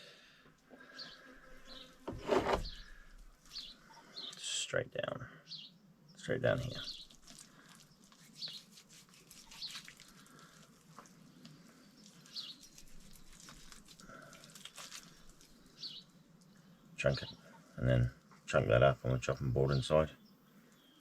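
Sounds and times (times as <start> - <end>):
faint clicks and scrapes: 1.2 - 3.6
small bird chirping: 2.6 - 4.4, 5.5 - 10.6, 11.2 - 17.8.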